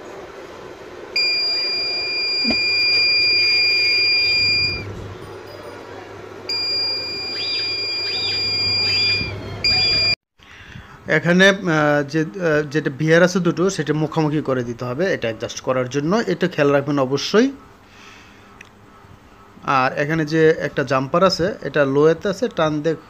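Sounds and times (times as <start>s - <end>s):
high-pitched alarm buzzer: 1.2s - 4.9s, 6.5s - 10.2s.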